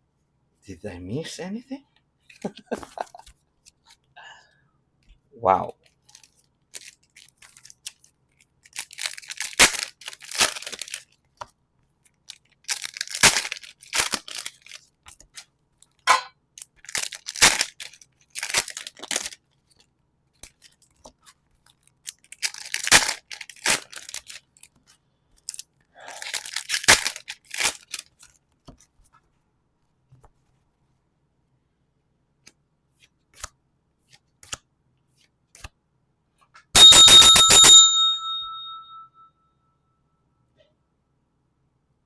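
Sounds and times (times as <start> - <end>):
foil packs tearing and crinkling: 6.1 - 8.0, 8.6 - 11.1, 12.3 - 14.8, 16.6 - 19.4, 22.0 - 24.7, 26.2 - 28.3.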